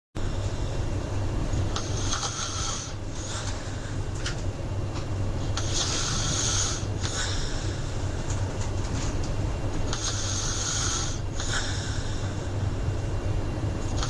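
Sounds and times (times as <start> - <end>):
steady low hum: 0.2 - 14.0
person snoring: 1.8 - 4.0, 5.6 - 8.0, 9.9 - 12.6.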